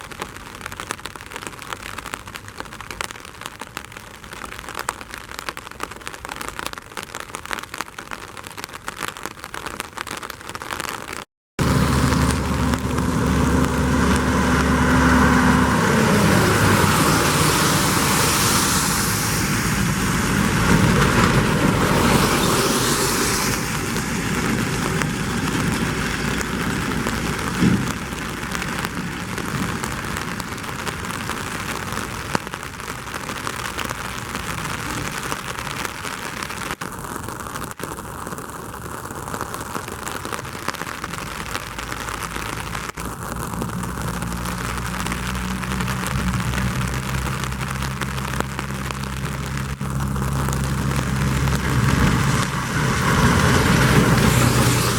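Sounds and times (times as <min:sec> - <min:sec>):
steady rain falling: 0:00.0 - 0:54.9
rushing noise: 0:11.6 - 0:31.3, 0:43.9 - 0:54.9.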